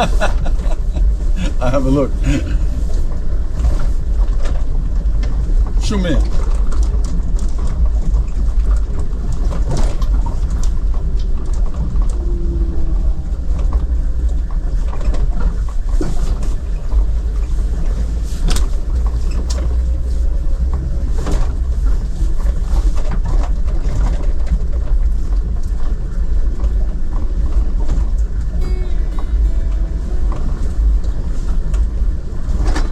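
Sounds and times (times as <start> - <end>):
car engine and road noise: 0.0 - 28.7.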